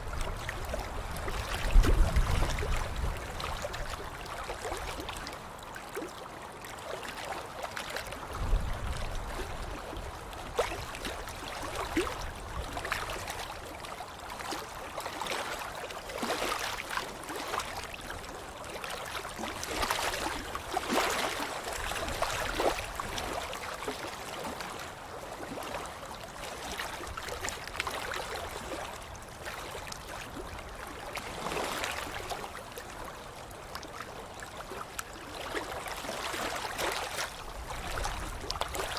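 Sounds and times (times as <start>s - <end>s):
water splashing: 19.0s - 24.8s, 34.6s - 38.9s.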